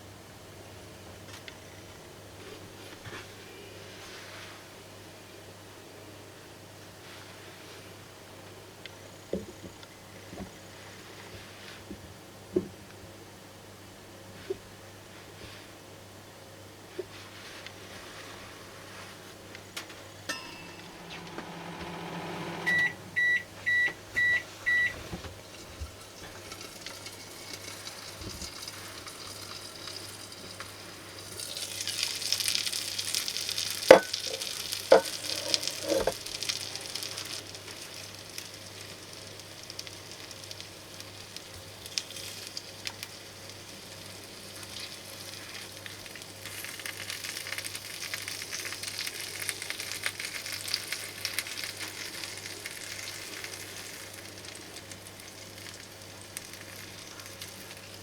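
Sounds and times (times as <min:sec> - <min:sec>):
microwave oven beeping: 0:19.8 - 0:27.8
fish sizzling in a pan: 0:26.0 - 0:58.0.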